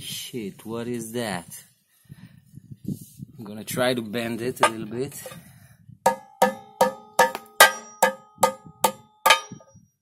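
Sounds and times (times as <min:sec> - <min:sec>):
hammer striking metal screw: 0:06.1 - 0:09.7.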